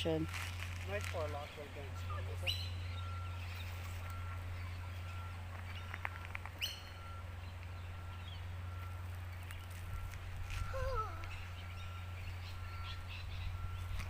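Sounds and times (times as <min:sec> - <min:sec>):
birds calling and chirping: 0:00.0 - 0:14.0
steady low hum: 0:00.0 - 0:14.0
faint short tone: 0:09.9 - 0:14.0.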